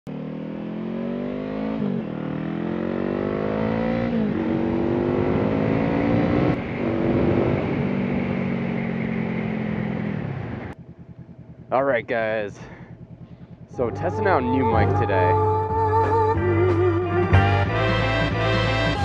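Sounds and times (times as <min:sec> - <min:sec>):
motorcycle engine accelerating: 0:00.1 - 0:19.0.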